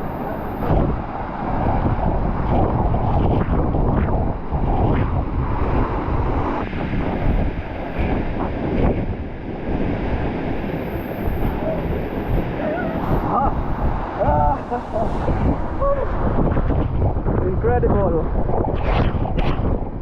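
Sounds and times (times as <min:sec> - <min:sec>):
wind buffeting microphone: 0:00.0 - 0:20.0
waterfall rushing: 0:11.5 - 0:16.3.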